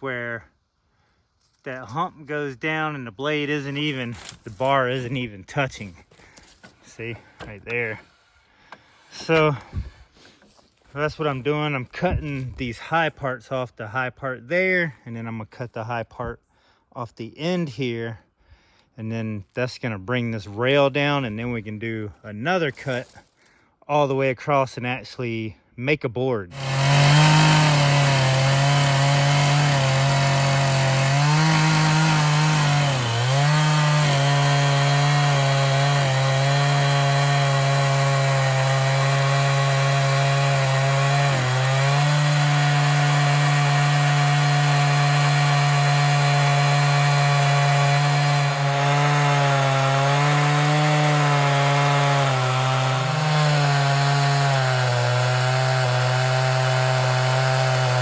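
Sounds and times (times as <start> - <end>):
chainsaw cutting log: 3.4 - 12.6, 26.5 - 58.0.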